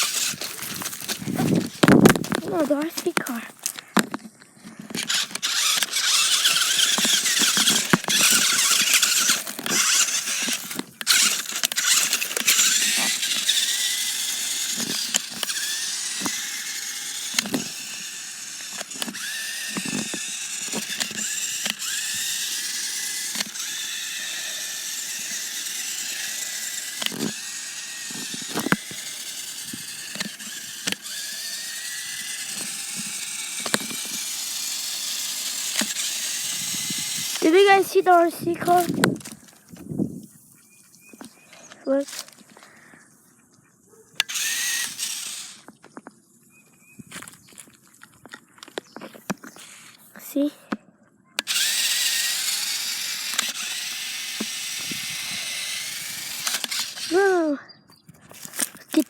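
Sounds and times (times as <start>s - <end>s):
rc car motor whining: 0.0s - 43.0s, 44.2s - 45.8s, 48.6s - 50.7s, 51.4s - 59.0s.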